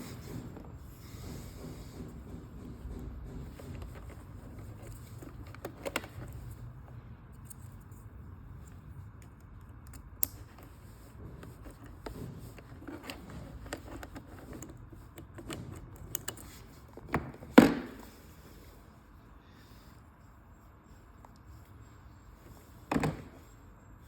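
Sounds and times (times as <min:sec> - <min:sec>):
plastic and metal parts rattling: 0:02.8 - 0:06.7, 0:09.9 - 0:18.0.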